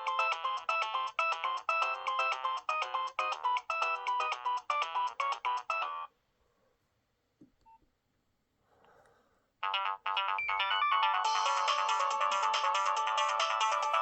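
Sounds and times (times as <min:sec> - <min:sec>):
electronic ringtone melody: 0:00.0 - 0:06.1, 0:09.6 - 0:14.0.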